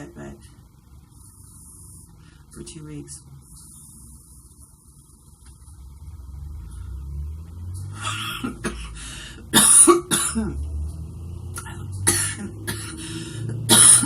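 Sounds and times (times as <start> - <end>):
woman coughing: 8.1 - 10.6, 11.6 - 14.0.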